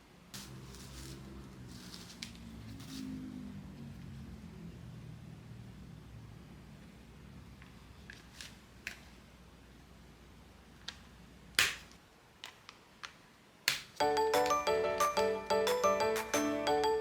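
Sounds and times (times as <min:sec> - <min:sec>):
glockenspiel-like background music: 0:14.0 - 0:17.0.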